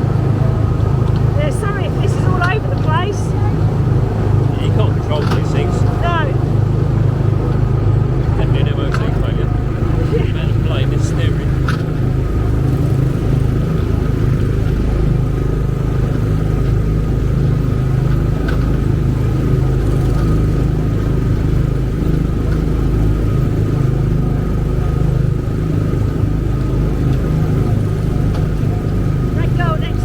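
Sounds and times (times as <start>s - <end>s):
loud low rumble: 0.0s - 17.2s
faint steady whine: 0.0s - 30.0s.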